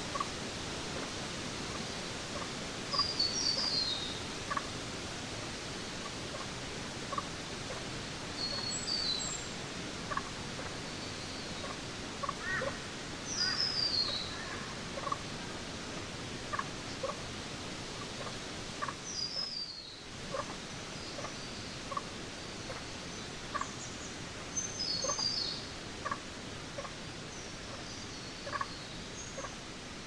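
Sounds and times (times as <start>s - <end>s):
steady background hiss: 0.0s - 30.0s
birds calling: 10.1s - 15.3s, 20.3s - 26.2s, 26.8s - 29.6s.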